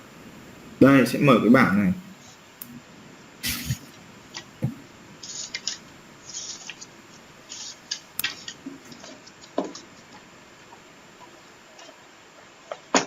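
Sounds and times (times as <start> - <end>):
book pages rustling: 5.2 - 13.0.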